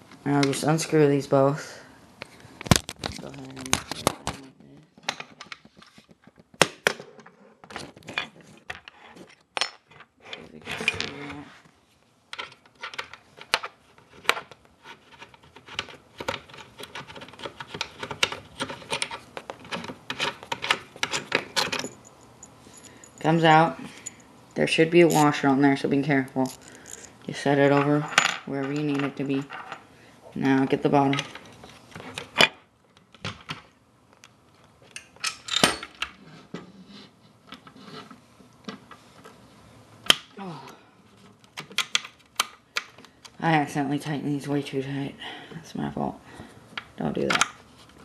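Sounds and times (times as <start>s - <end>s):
metallic clinks of wrench and screws: 21.2s - 23.3s
wrench clicking and scraping metal: 25.0s - 25.4s.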